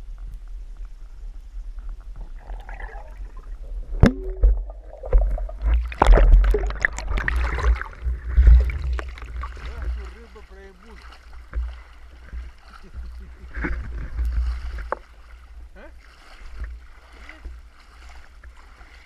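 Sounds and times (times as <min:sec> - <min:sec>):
bubbling and churning water: 0:00.0 - 0:19.0
underwater low rumble: 0:00.0 - 0:19.0
water gurgling: 0:00.0 - 0:19.0.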